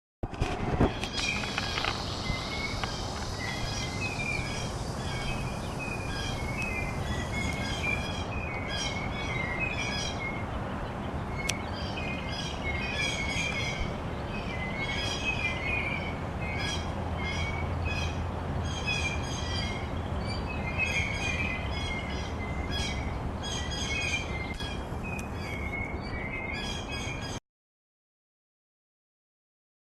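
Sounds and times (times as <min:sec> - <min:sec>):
steady background noise: 0:00.2 - 0:27.4
songbirds chirping: 0:00.6 - 0:27.4.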